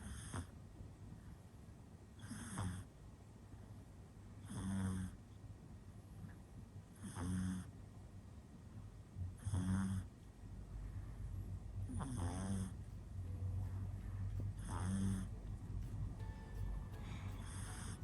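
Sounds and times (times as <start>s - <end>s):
puppy snoring: 0.0s - 0.5s, 2.2s - 2.9s, 4.4s - 5.2s, 6.9s - 7.8s, 9.2s - 10.2s, 11.8s - 13.2s, 14.4s - 15.7s, 17.4s - 18.0s.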